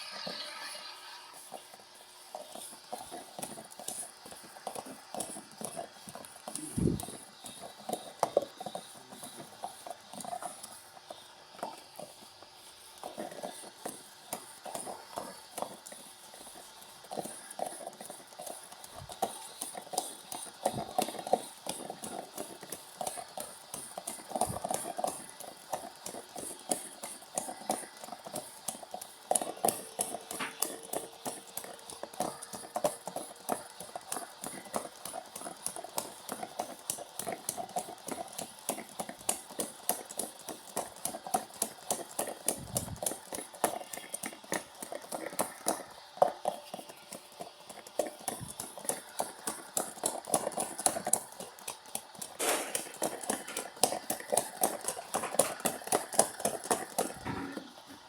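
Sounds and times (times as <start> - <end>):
washing machine clacking and knocking: 52.4 - 53.6, 57.1 - 57.9.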